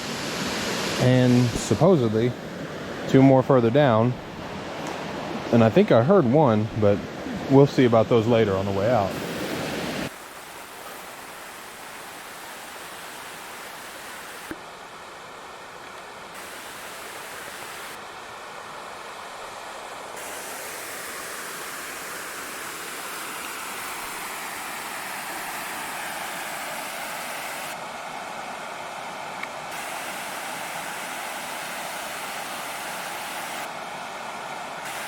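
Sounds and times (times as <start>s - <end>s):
waterfall rushing: 0.0s - 2.6s, 6.2s - 14.6s, 16.3s - 18.1s, 20.2s - 35.0s.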